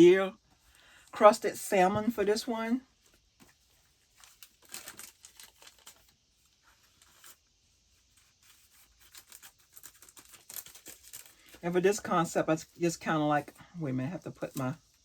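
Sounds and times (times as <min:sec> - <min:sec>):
small ticks and scrapes: 0:03.0 - 0:11.7
paper and packaging rustling: 0:03.0 - 0:15.0.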